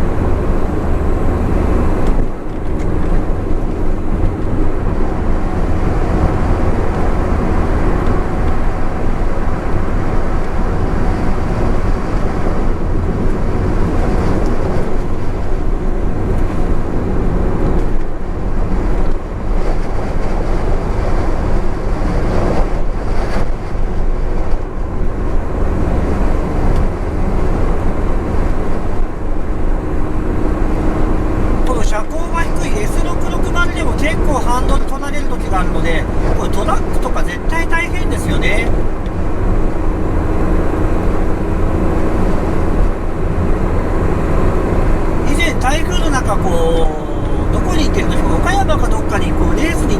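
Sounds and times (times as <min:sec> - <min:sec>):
tyre and wind noise: 0:00.0 - 0:31.7
car engine: 0:00.0 - 0:49.9.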